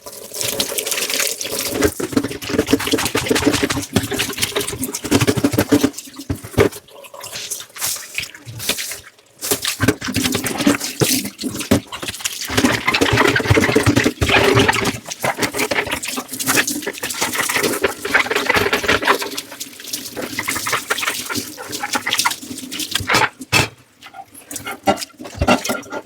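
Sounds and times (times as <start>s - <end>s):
tap water running into sink: 0.0s - 26.0s
dishes clattering: 23.0s - 26.0s.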